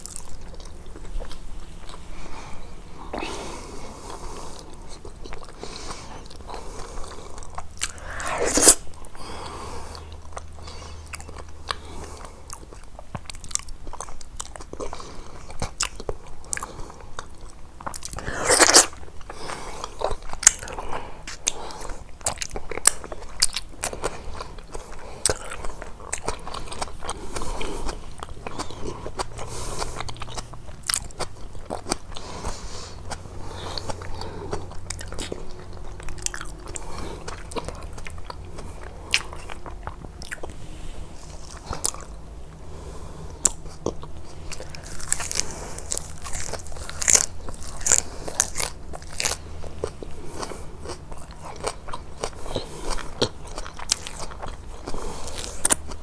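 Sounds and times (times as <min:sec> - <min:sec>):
biting and chewing: 0:00.0 - 0:56.0.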